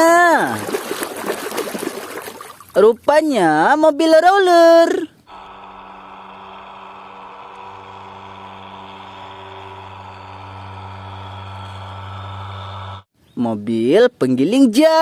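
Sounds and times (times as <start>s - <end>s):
motor-like hum: 5.2s - 13.1s
deeper low hum: 5.3s - 13.1s.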